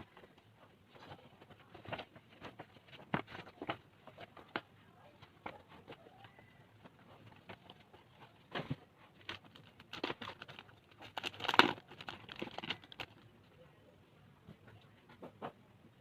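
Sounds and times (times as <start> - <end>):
packaging rustling and crinkling: 5.4 - 13.3.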